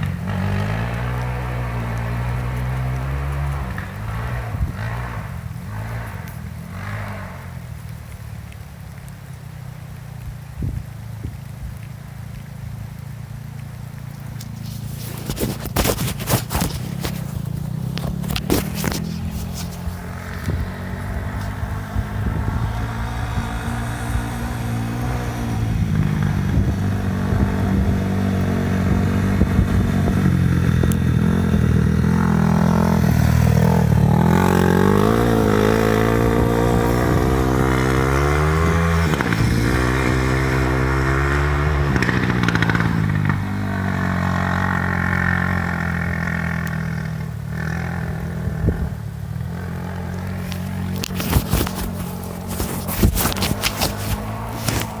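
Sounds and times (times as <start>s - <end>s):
motorcycle engine revving: 0.0s - 8.2s, 14.1s - 55.0s
sharp crackling clicks: 11.5s - 22.2s, 50.0s - 55.0s.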